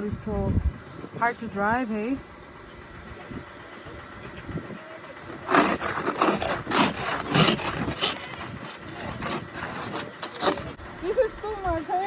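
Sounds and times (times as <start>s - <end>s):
shovel scraping snow: 5.2s - 10.8s.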